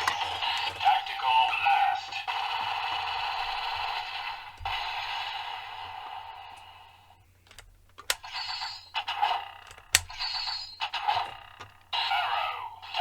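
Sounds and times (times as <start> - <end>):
plastic toy gun clicks: 0.0 - 1.2, 7.3 - 12.0.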